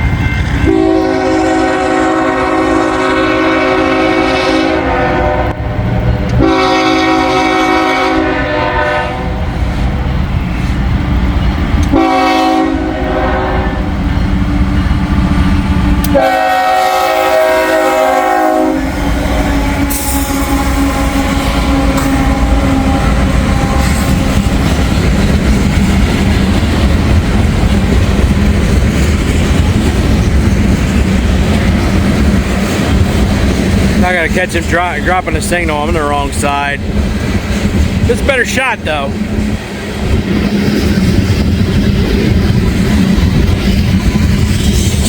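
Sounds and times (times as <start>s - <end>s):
train rumbling past: 0.0s - 45.0s
locomotive horn blasts: 0.2s - 9.5s, 11.9s - 14.0s, 16.0s - 24.6s
wheels clacking over rail joints: 19.5s - 38.6s.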